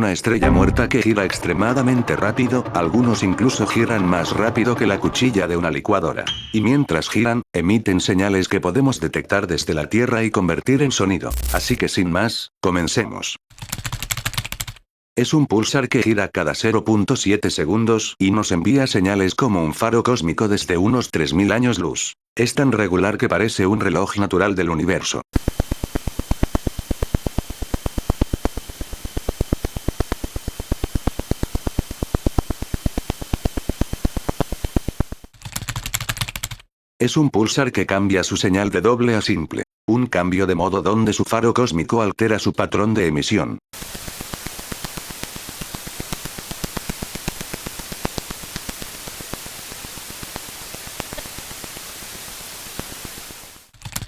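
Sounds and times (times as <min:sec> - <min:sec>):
static hiss: 0:11.3 - 0:11.8, 0:25.4 - 0:35.3, 0:43.8 - 0:53.7
rapid regular sharp clicks: 0:25.4 - 0:35.3, 0:43.8 - 0:53.6.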